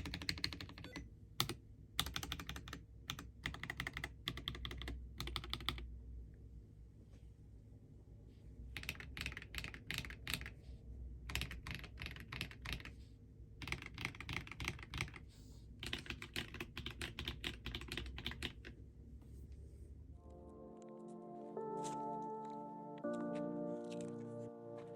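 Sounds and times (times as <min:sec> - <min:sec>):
mechanical keyboard typing: 0:00.0 - 0:05.8, 0:08.8 - 0:10.6, 0:11.3 - 0:12.9, 0:13.6 - 0:15.2, 0:15.8 - 0:18.8.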